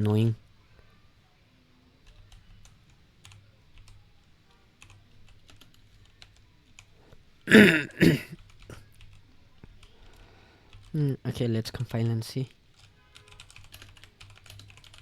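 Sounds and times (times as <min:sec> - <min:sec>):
keyboard typing: 0:02.0 - 0:04.0, 0:04.8 - 0:06.9, 0:08.4 - 0:11.0, 0:11.7 - 0:15.0
short wordless vocal sounds: 0:07.5 - 0:08.4.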